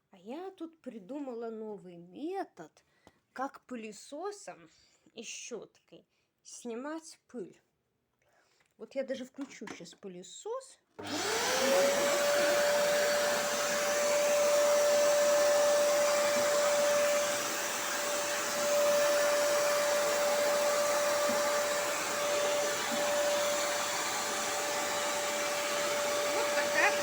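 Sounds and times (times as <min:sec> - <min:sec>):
vacuum cleaner running: 0:11.0 - 0:27.0.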